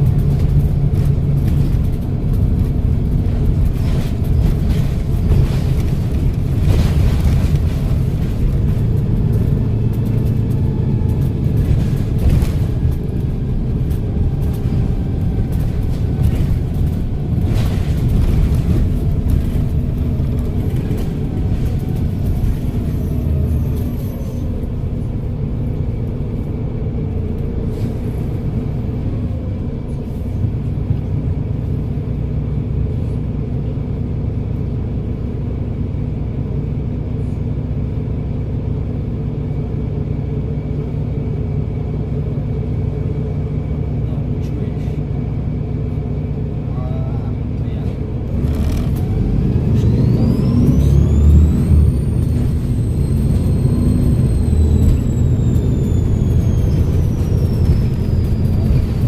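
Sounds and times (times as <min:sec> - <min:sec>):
bus diesel engine rumbling: 0:00.0 - 0:59.0
gearbox whine: 0:48.3 - 0:59.0.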